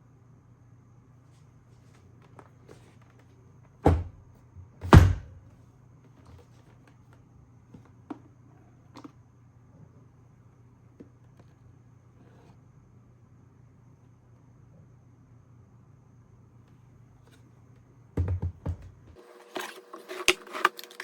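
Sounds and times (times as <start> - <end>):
heavy thunks: 3.8 - 4.2, 4.8 - 5.4.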